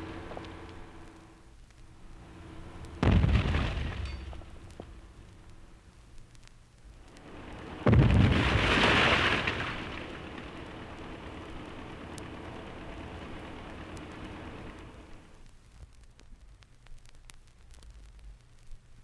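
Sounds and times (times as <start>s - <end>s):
rushing rumble and hiss: 0.0s - 19.0s
dynamite blast boom: 3.0s - 5.1s, 7.8s - 10.0s.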